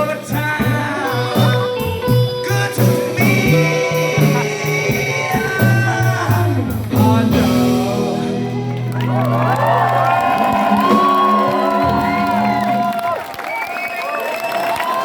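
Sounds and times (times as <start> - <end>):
live rockabilly band playing: 0.0 - 13.5
crowd cheering and whooping: 8.6 - 15.0.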